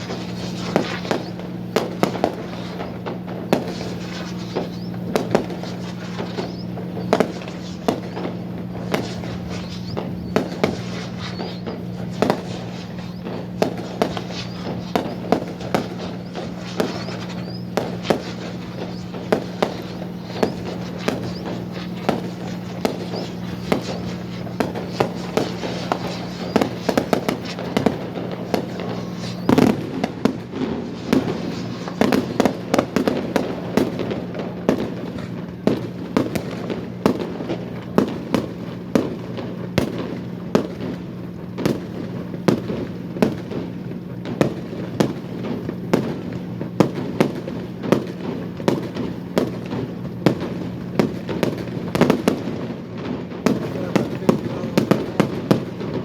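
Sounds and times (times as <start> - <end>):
low hum: 0.0 - 33.0
fireworks bursting with bangs: 0.0 - 56.0.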